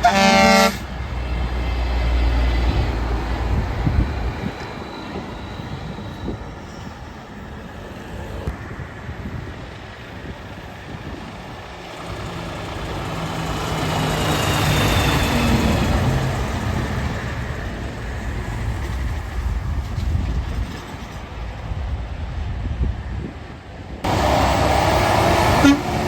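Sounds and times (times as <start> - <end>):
heavy truck driving past: 10.8 - 20.2, 24.0 - 26.0.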